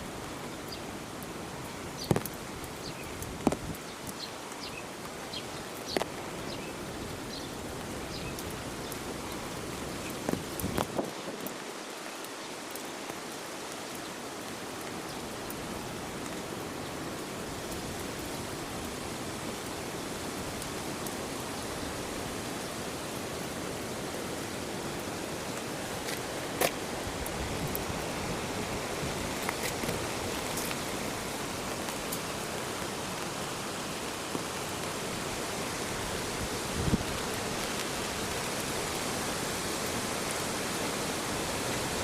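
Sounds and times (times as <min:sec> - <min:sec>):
water rushing: 0:00.0 - 0:42.0.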